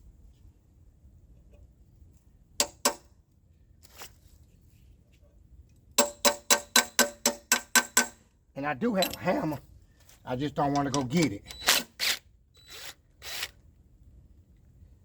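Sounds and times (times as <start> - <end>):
metal tool striking metal: 6.0 - 8.2, 9.0 - 9.5.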